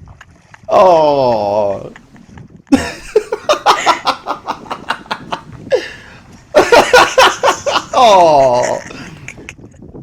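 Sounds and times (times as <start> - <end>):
person laughing: 2.7 - 9.5.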